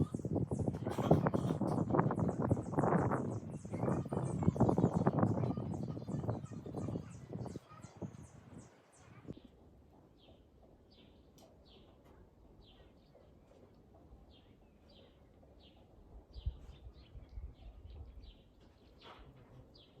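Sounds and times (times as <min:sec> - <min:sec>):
small birds chirping: 0:00.0 - 0:20.0.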